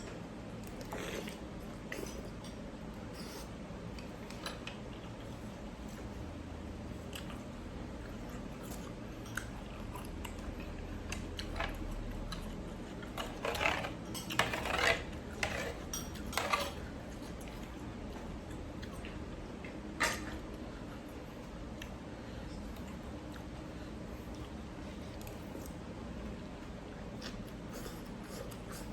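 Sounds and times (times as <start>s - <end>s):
loud eating noises: 0.0s - 28.9s
low steady hum: 0.0s - 28.9s
chewing: 0.6s - 6.2s, 6.9s - 28.9s
utensils clinking against bowl: 13.2s - 16.8s.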